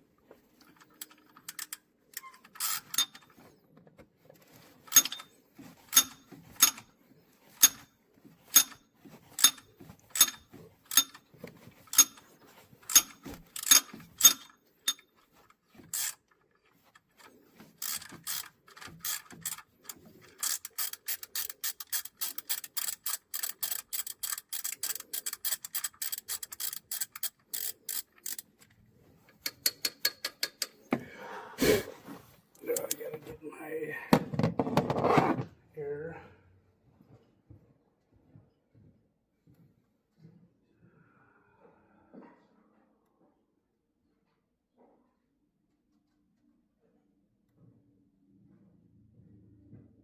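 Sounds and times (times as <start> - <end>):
ratchet wrench clicking: 4.9 - 5.3, 5.9 - 6.8, 8.5 - 8.8, 9.4 - 11.2, 11.9 - 12.2, 12.8 - 15.0, 15.9 - 16.2, 17.8 - 28.5, 29.4 - 30.8.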